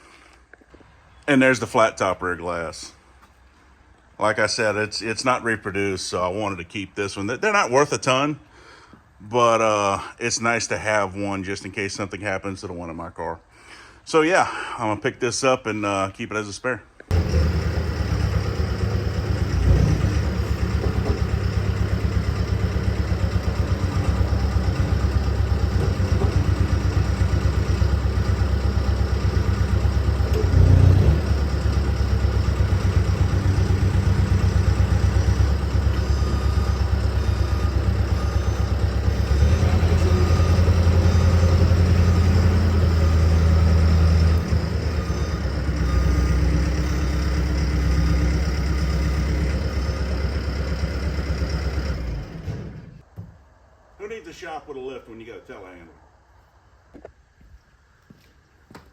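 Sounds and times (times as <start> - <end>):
engine running steadily: 17.1 - 53.0.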